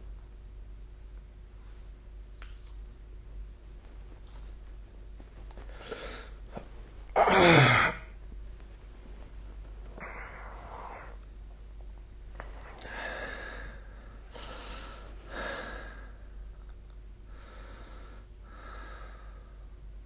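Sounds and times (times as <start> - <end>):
person breathing heavily while asleep: 5.6 - 6.4, 9.9 - 11.2, 12.6 - 16.4, 17.3 - 19.8.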